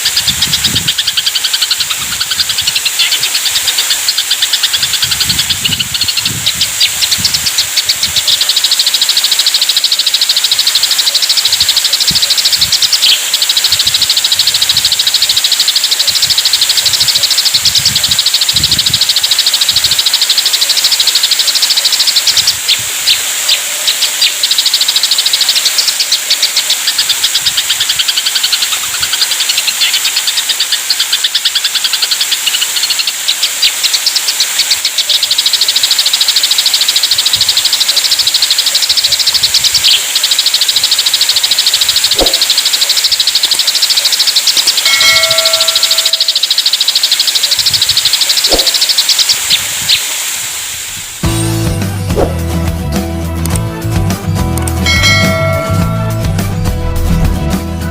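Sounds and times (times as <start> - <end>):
sparrows chattering: 0.0 - 50.2, 51.2 - 57.9
low thumps: 51.2 - 57.9.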